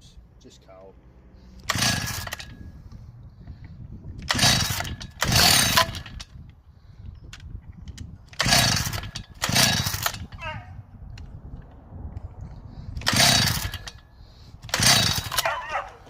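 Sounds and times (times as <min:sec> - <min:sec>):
chainsaw recoil starter pulls: 0:01.6 - 0:02.8, 0:04.2 - 0:06.6, 0:07.3 - 0:10.4, 0:13.0 - 0:16.0.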